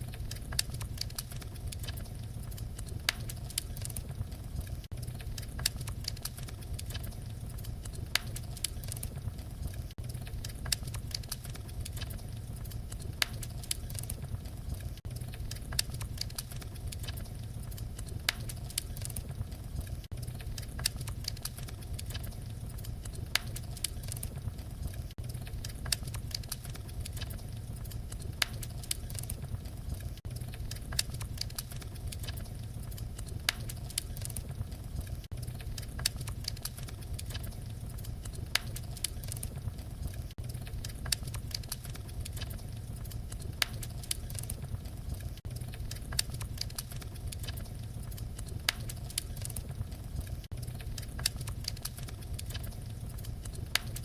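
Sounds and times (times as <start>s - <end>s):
fire pops and snaps: 0.0s - 54.0s
low rumble of flames: 0.0s - 54.0s.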